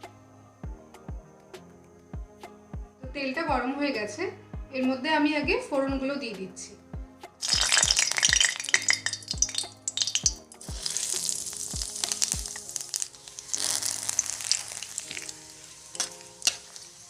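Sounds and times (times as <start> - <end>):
spices sizzling in hot oil: 7.4 - 17.0.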